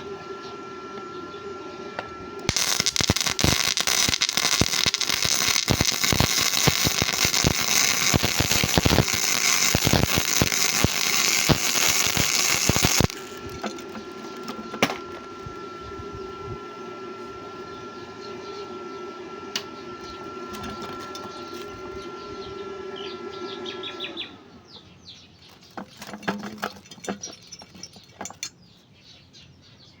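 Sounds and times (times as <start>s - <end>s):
hum with thin whine: 0.0s - 29.2s
welding arc crackling: 2.4s - 15.6s.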